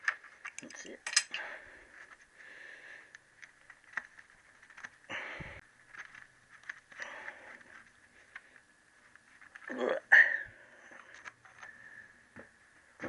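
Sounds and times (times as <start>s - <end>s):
tools clicking on metal parts: 0.5s - 1.4s.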